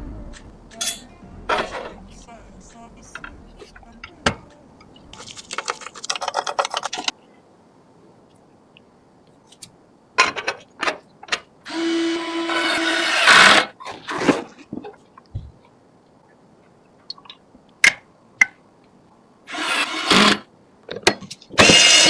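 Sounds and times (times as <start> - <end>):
fast run of clicks: 0.0 - 7.1
small power tool whirring: 11.7 - 13.5, 19.5 - 20.4.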